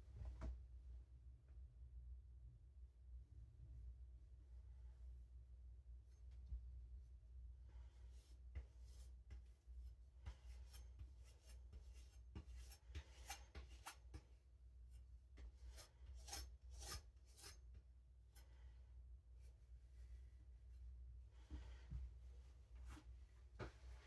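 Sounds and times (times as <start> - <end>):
knife scraping on whetstone: 12.6 - 14.0, 15.7 - 17.6.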